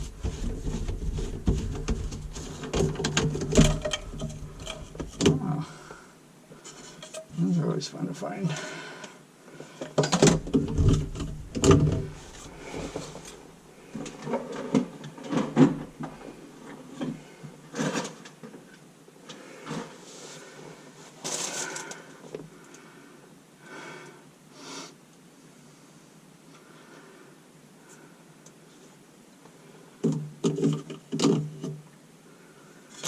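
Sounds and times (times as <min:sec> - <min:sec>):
pipe parts and tools clattering: 0:00.0 - 0:05.5, 0:06.6 - 0:07.4, 0:09.8 - 0:16.8.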